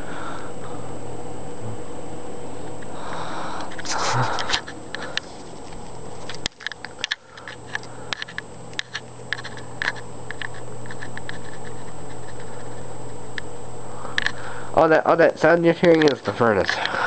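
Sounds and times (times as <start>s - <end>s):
furnace hum: 0.0s - 17.0s
small clicks and taps: 15.8s - 17.0s.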